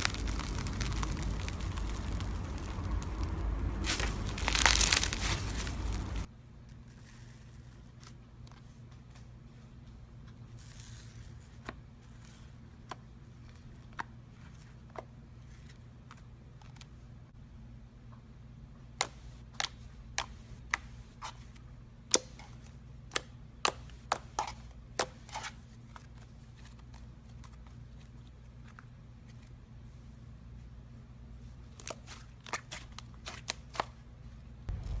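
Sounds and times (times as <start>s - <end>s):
slime clicking and popping: 0.0s - 6.0s
steady low hum: 0.0s - 6.6s, 34.0s - 35.0s.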